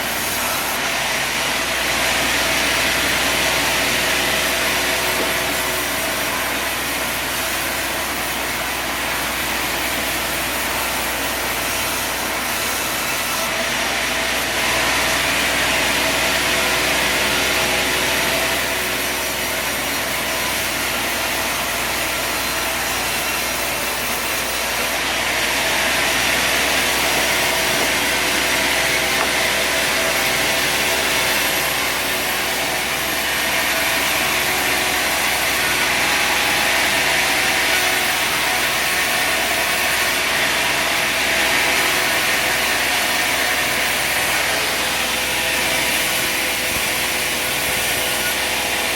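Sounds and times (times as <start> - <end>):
sawmill sawing log: 0.0 - 48.9.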